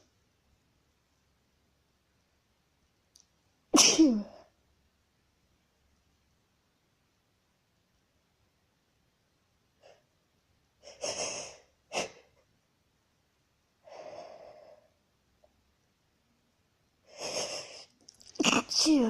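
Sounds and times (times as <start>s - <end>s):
woman sneezing: 3.8s - 4.4s.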